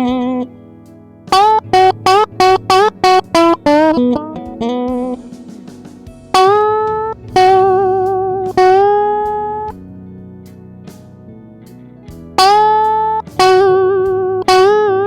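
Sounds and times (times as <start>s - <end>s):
blues guitar with bent notes: 0.0s - 15.0s.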